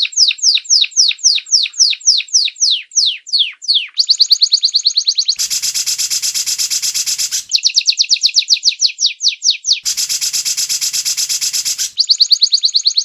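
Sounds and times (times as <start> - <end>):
bird whistled notes: 2.8 - 8.2, 9.7 - 13.0
bird harsh rattle call: 5.4 - 7.6, 9.8 - 12.3.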